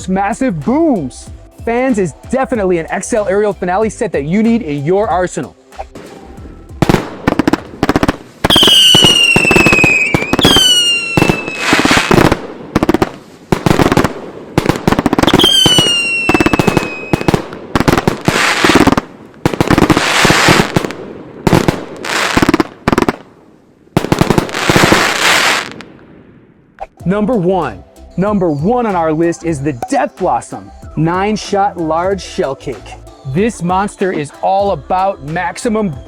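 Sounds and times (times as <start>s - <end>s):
firework booms: 6.8s - 23.2s, 24.0s - 26.4s
firework crackling: 6.8s - 23.2s, 24.0s - 25.8s
falling firework whistles: 8.4s - 12.2s, 15.2s - 17.4s.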